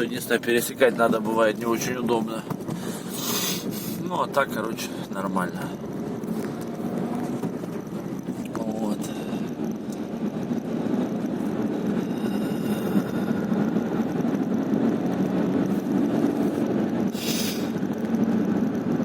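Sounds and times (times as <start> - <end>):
car engine and road noise: 0.0 - 19.0
short hiss: 3.2 - 3.7, 17.2 - 17.7.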